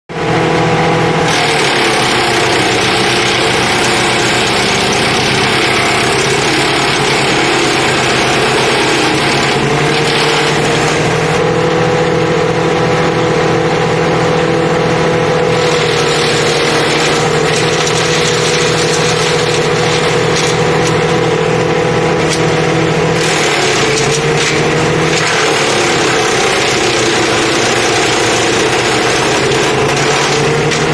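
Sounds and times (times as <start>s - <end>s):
harsh rushing noise: 0.1s - 30.9s
wood chipper engine running: 0.1s - 30.9s.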